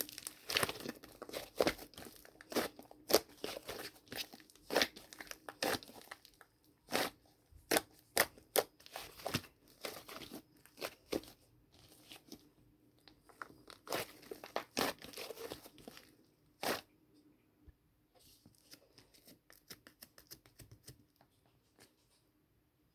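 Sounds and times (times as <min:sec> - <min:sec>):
dried clay crunching by hand: 0:00.0 - 0:12.4, 0:13.2 - 0:16.9.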